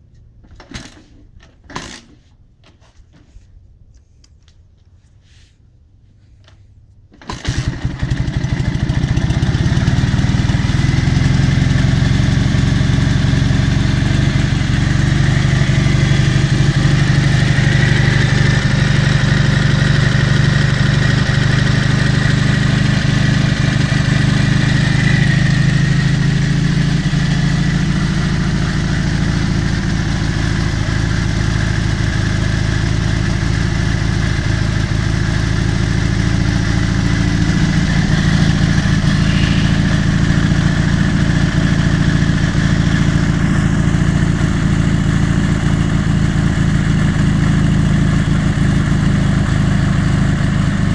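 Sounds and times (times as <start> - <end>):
motorcycle engine starting and idling: 0.1 - 3.3, 6.4 - 50.9.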